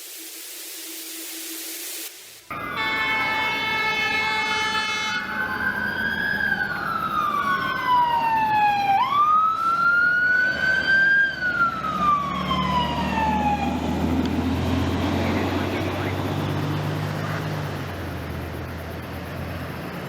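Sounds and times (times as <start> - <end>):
horn blast: 2.5 - 5.6
fire truck siren wailing: 2.5 - 20.0
heavy truck engine rumble: 2.5 - 20.0.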